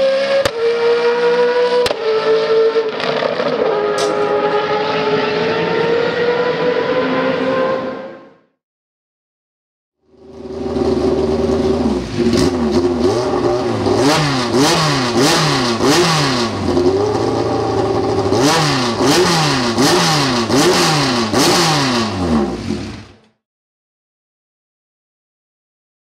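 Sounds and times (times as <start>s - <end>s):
race car engine revving: 0.0s - 8.3s, 10.2s - 23.3s.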